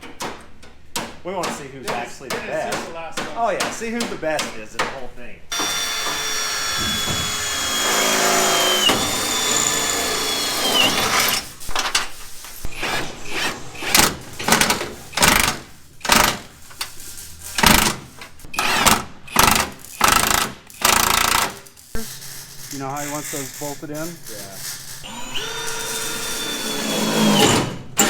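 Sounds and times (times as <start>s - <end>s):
power tool motor whine: 5.5s - 11.4s, 25.0s - 28.0s.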